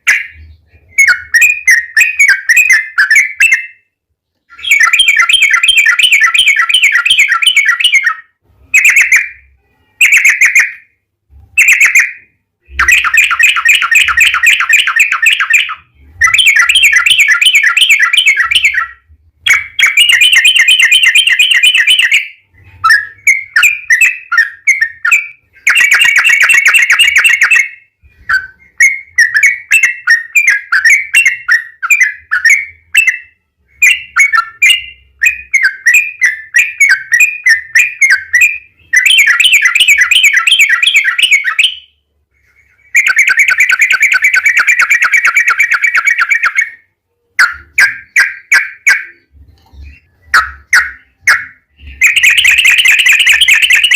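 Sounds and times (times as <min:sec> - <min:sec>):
bulbul singing rattling trills: 0:47.4 - 0:53.9.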